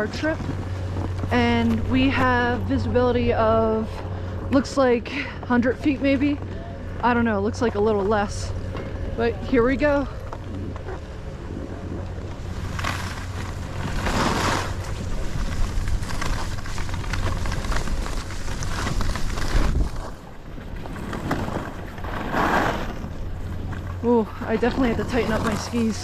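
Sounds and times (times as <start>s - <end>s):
skis sliding over snow: 0.0s - 3.9s, 9.6s - 26.0s
wind on microphone: 6.4s - 26.0s.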